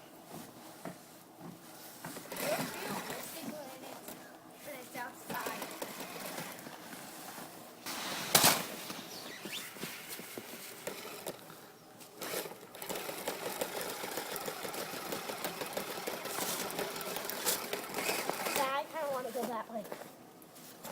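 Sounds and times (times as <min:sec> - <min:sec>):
electric motor and gears whirring: 0:02.2 - 0:03.9, 0:04.7 - 0:06.8, 0:12.1 - 0:19.5.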